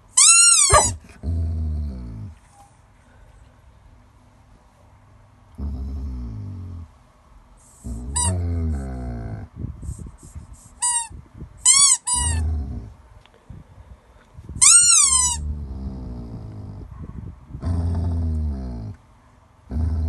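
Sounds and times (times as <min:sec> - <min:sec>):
snoring rumbles: 0:05.6 - 0:06.9, 0:07.8 - 0:09.5, 0:12.3 - 0:13.0, 0:15.4 - 0:16.9, 0:17.6 - 0:19.0, 0:19.7 - 0:20.0.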